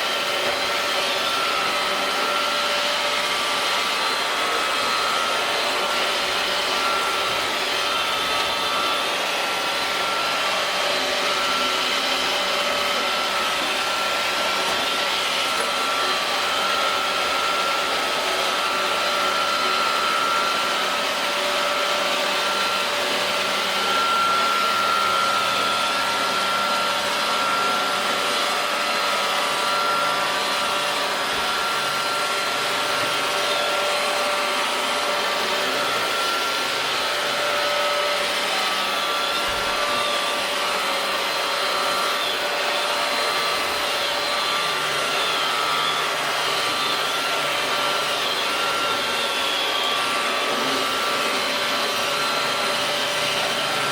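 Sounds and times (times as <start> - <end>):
robot vacuum running: 0.0 - 53.9.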